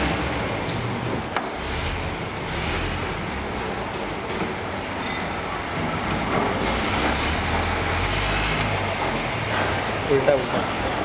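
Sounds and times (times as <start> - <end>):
grinding machine running: 6.6 - 11.0.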